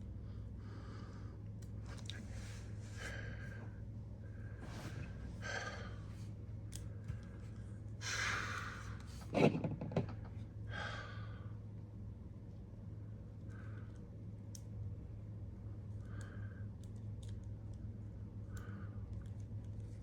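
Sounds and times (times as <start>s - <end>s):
steady low hum: 0.0s - 20.0s
person breathing: 0.2s - 1.4s, 2.2s - 7.1s, 8.0s - 9.2s, 10.7s - 11.6s, 16.0s - 16.8s, 18.4s - 19.2s.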